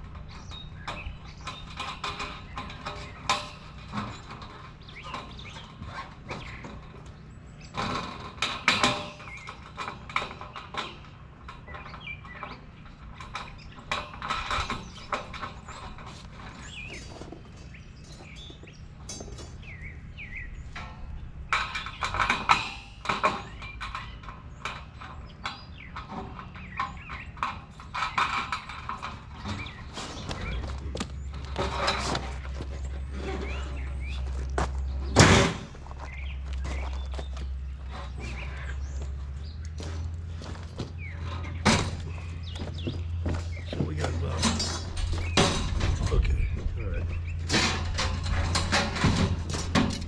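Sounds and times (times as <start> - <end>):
metal panels clanking and rattling: 0.0 - 50.0.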